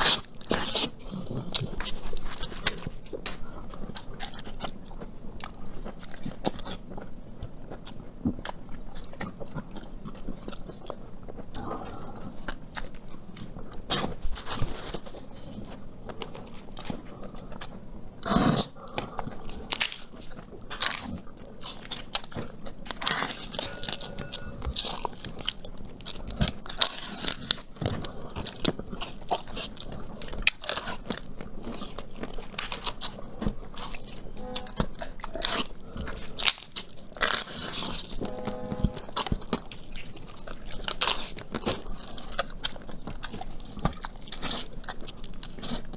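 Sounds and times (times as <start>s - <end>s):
crunching and chewing: 0.0s - 45.9s.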